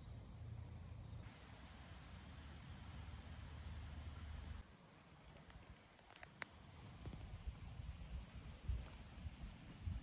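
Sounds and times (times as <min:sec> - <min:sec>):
faint ambient hiss: 0:00.0 - 0:10.0.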